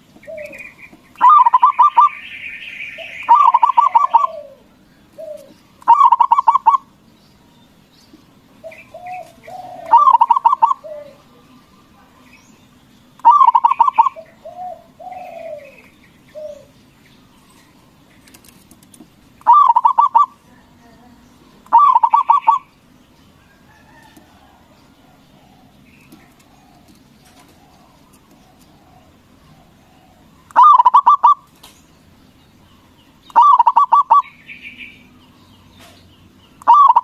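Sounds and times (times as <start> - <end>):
dove cooing: 0.0 - 6.9, 8.6 - 11.5, 13.2 - 16.8, 19.4 - 20.4, 21.7 - 22.7, 23.6 - 31.5, 33.3 - 35.0, 36.6 - 37.0.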